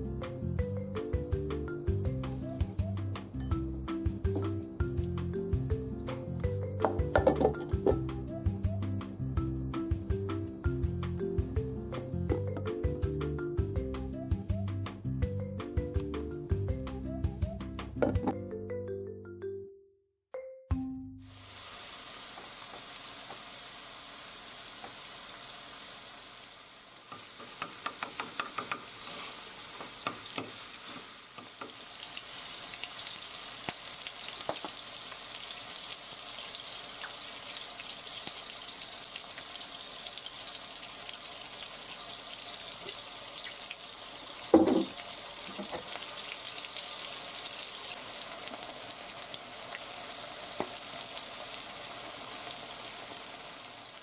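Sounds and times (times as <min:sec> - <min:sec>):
utensil knocking against pan: 0:06.8 - 0:07.7, 0:27.1 - 0:28.9, 0:44.5 - 0:45.9
food sizzling in a frying pan: 0:21.2 - 0:54.0.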